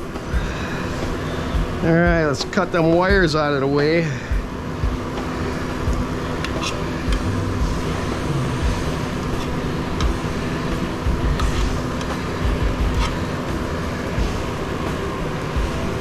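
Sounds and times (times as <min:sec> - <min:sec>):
rumbling handling noise: 0:04.3 - 0:16.0.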